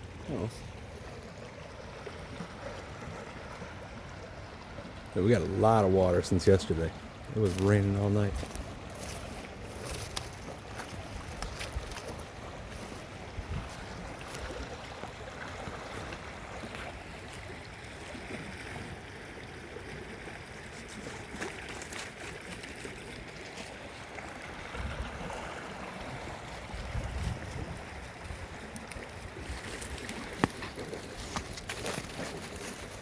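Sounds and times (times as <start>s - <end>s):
floodwater rushing: 0.0s - 33.0s
wind rumble on microphone: 8.2s - 14.8s, 24.5s - 31.4s.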